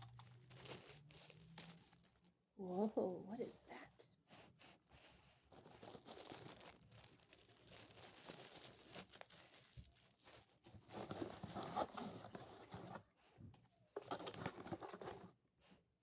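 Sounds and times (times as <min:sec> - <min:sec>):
plastic packaging crinkling: 0:00.0 - 0:02.4, 0:05.5 - 0:12.6.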